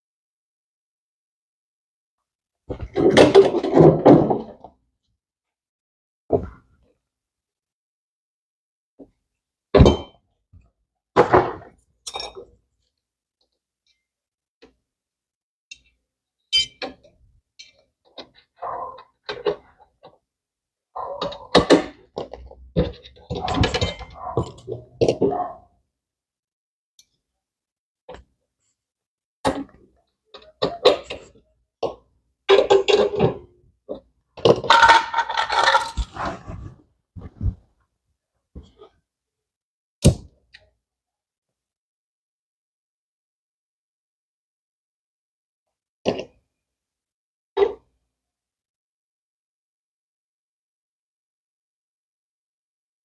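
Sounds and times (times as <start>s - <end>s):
tools and metal parts clattering: 22.8s - 25.2s, 34.4s - 36.2s
metal tools knocking and clinking: 34.6s - 36.1s.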